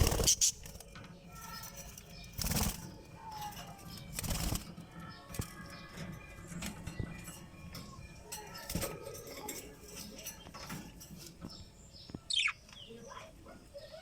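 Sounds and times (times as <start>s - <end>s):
wings flapping: 0.0s - 0.7s, 2.3s - 2.9s, 4.1s - 4.8s
baby birds cheeping: 0.0s - 14.0s.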